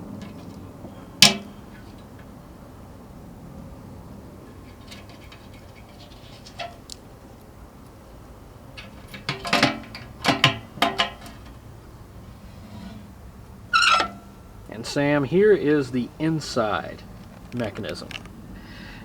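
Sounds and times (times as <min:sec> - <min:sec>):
sharp clicks and clanks of lock: 0:17.1 - 0:18.4.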